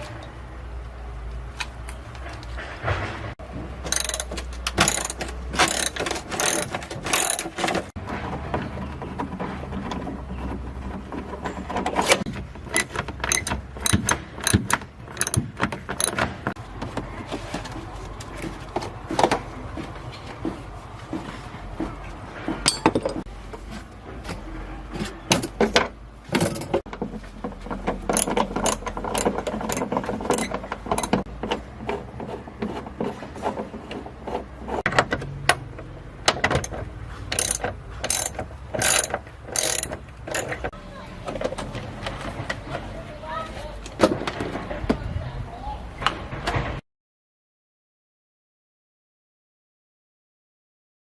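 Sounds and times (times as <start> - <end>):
metal parts clicking and knocking: 3.5 - 8.0, 8.7 - 16.6, 22.6 - 23.3, 25.3 - 31.6, 34.8 - 40.8.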